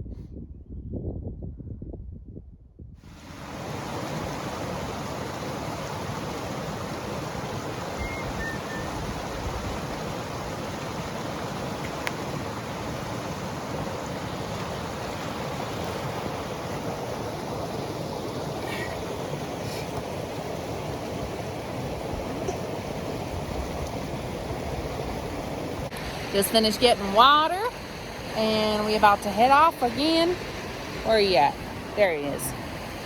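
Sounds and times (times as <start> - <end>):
creek rushing: 3.2 - 33.0
high chirps: 8.0 - 9.0.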